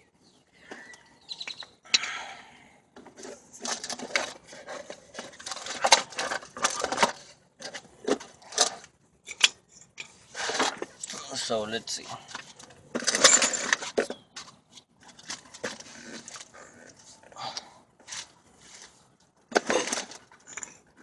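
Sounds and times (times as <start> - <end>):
metal parts clicking and rubbing: 3.2 - 11.2, 12.3 - 17.0, 19.5 - 21.0.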